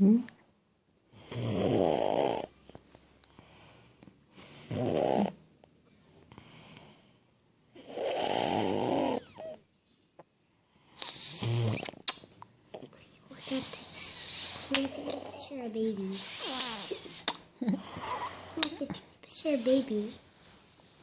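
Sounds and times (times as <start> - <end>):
baby snoring: 1.2 - 2.6, 4.4 - 5.4, 7.8 - 9.6, 11.0 - 11.9, 12.7 - 18.7
soft breathing: 12.6 - 21.0.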